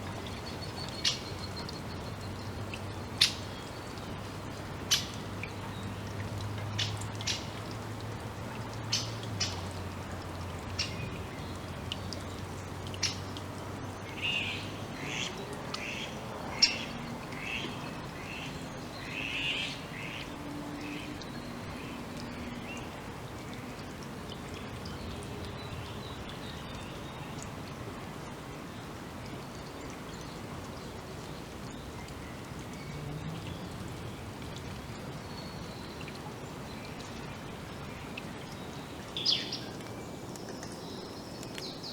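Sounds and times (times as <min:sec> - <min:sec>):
forest birds calling: 0:04.8 - 0:05.9, 0:37.9 - 0:41.9.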